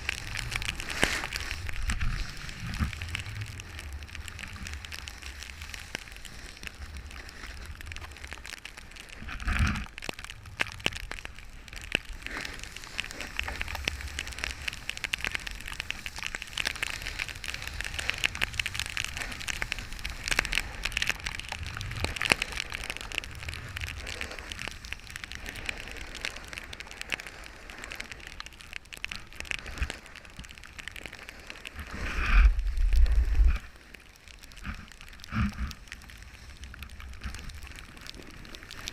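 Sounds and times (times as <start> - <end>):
snowboard scraping over snow: 0.0 - 8.2, 12.2 - 21.0, 31.8 - 33.8
wind rumble on microphone: 0.0 - 27.3, 28.2 - 38.9.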